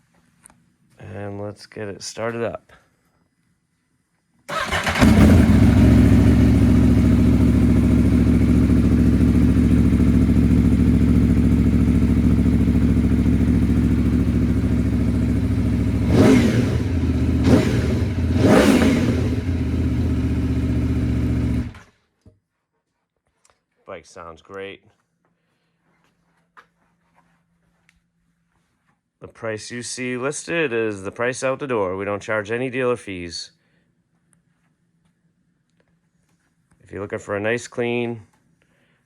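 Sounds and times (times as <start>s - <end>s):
motorcycle engine idling and revving: 4.5s - 21.9s.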